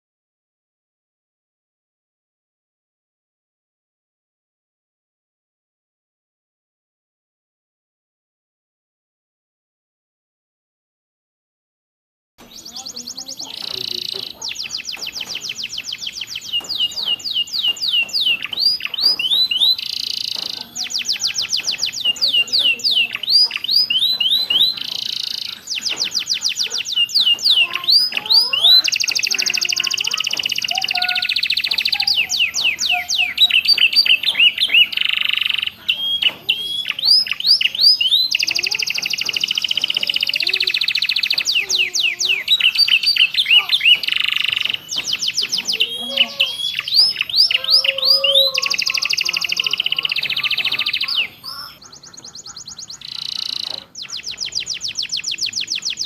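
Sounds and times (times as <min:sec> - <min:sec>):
canary singing trills: 0:12.4 - 0:56.0.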